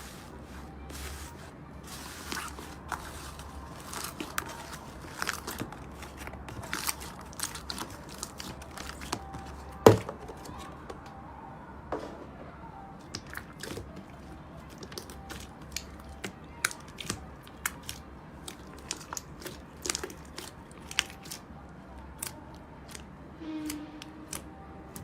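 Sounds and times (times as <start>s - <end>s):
squishy slime clicks and crackles: 2.3s - 9.6s, 13.0s - 23.1s.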